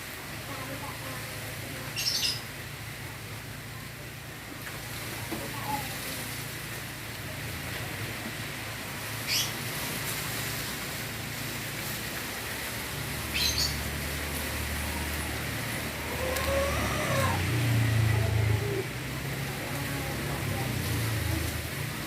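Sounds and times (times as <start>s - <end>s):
strong wind blowing: 14.9s - 20.5s.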